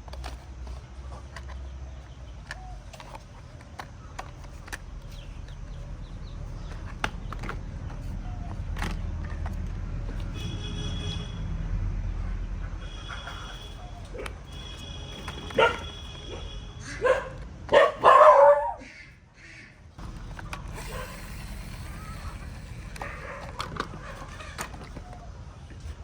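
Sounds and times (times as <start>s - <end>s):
dog barking: 15.5s - 19.0s, 23.0s - 24.3s.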